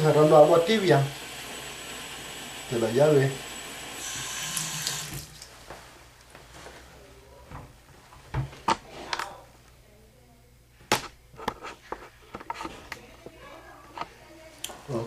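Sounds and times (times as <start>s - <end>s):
objects knocking and clunking: 7.5s - 9.2s, 10.9s - 12.9s.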